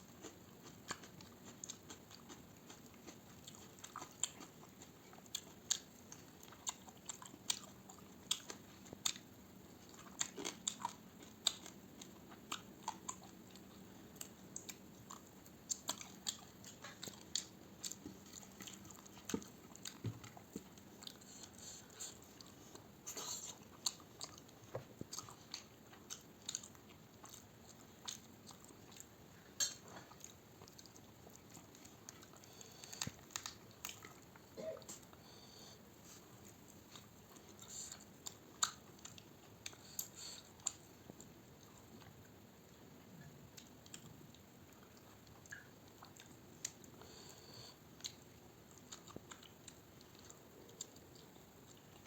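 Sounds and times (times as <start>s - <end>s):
person chewing and crunching: 0.0s - 35.3s, 35.9s - 52.0s.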